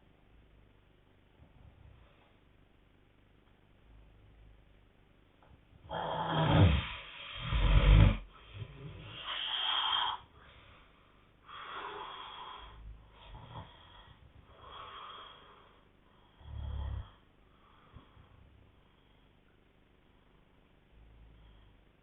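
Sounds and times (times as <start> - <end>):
person snoring: 5.9 - 10.4, 11.5 - 15.6, 16.3 - 17.2.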